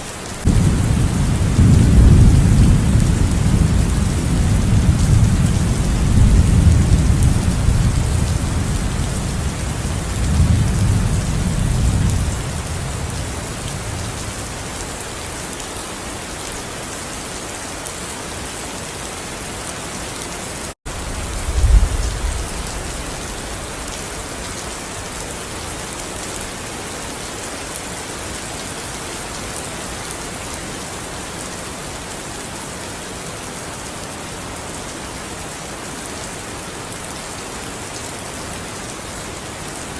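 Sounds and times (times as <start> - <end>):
steady rain falling: 0.0 - 39.9
low thunder rumble: 0.5 - 14.7, 20.9 - 24.5.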